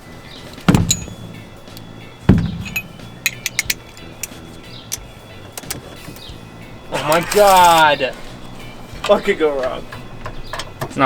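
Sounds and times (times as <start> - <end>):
background music: 0.0 - 11.0
heavy knocks on glass: 0.6 - 1.6, 2.3 - 3.3
broken glass clinking: 0.6 - 4.4.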